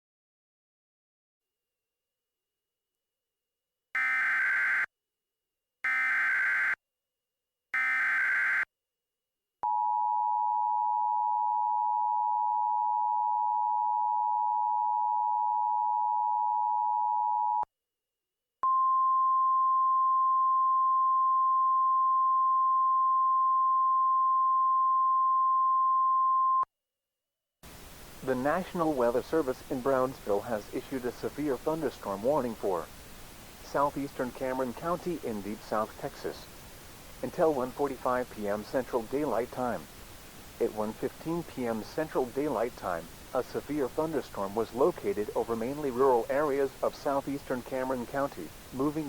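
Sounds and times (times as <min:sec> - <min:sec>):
steady weather-radio alert tone: 0:37.3 - 0:49.0.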